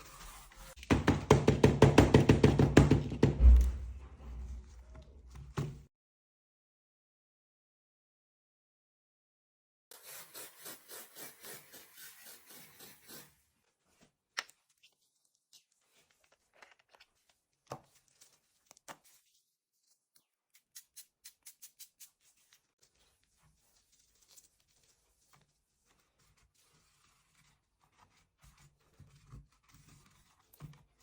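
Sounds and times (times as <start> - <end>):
brush scrubbing keyboard: 0.0 - 0.8, 10.0 - 13.3.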